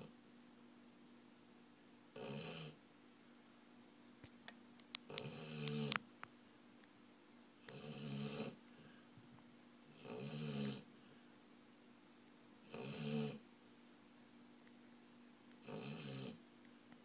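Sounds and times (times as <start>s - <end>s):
dog snoring: 2.1s - 2.8s, 5.1s - 6.0s, 7.6s - 9.0s, 9.9s - 11.2s, 12.6s - 13.4s, 15.6s - 16.4s.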